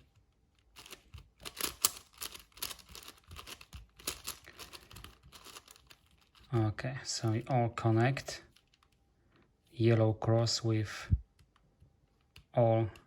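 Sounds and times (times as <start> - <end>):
puzzle cube clicking and rattling: 0.2 - 6.5.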